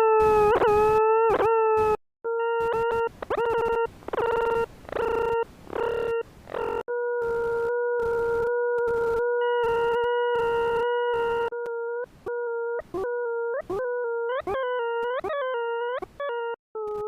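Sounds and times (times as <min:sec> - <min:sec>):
buzzy electronic tone: 0:00.0 - 0:11.5.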